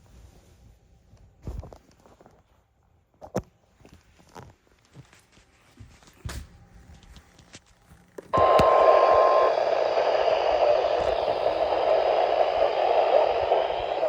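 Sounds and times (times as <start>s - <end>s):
loud radio static: 8.4s - 14.0s.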